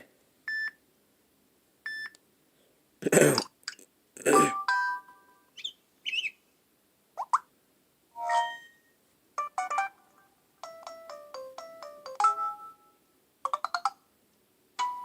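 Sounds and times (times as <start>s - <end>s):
chirpy bird-like trills: 5.5s - 6.4s
phone alert tones: 8.2s - 10.0s.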